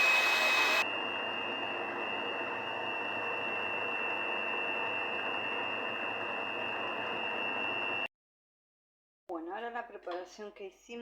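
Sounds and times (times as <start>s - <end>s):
electric mixer whining: 0.0s - 8.1s.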